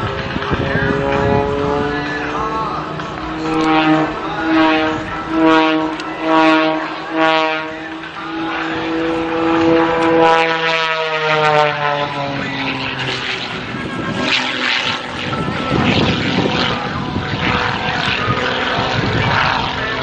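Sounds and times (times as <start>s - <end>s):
propeller airplane engine droning: 0.0s - 20.0s
rough rushing noise: 0.0s - 20.0s.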